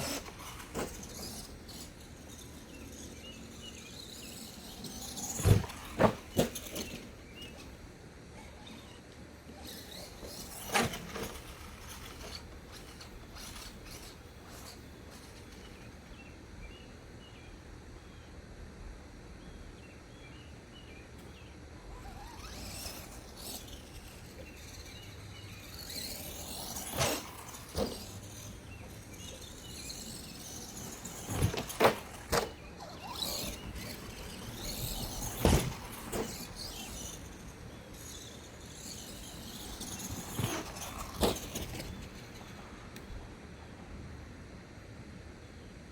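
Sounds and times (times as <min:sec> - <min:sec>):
toy truck knocks and thumps: 0:00.0 - 0:07.7, 0:22.0 - 0:43.2
toy truck electric motor whining: 0:00.0 - 0:16.7, 0:21.2 - 0:43.8.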